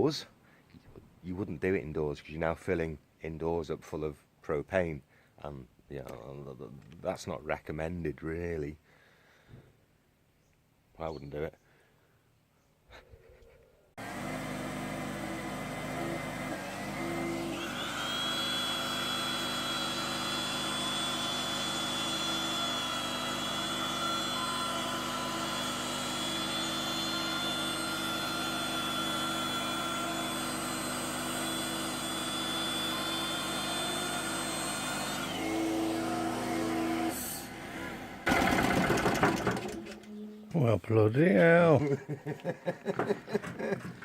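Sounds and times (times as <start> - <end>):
generator running: 14.0 - 40.1.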